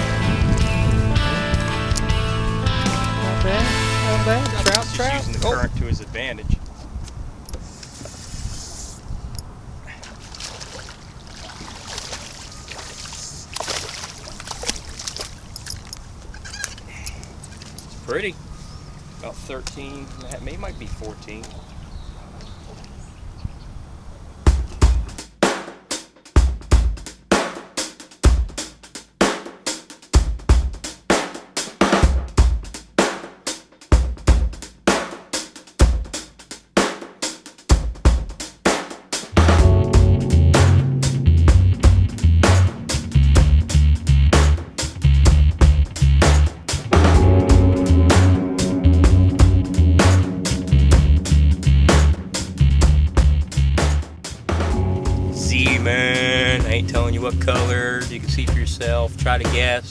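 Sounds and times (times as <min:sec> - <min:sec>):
drum-kit beat: 0:00.0 - 0:05.6, 0:24.5 - 0:59.9
water splashing and trickling: 0:09.7 - 0:18.3
steady low rumble: 0:39.4 - 0:59.9.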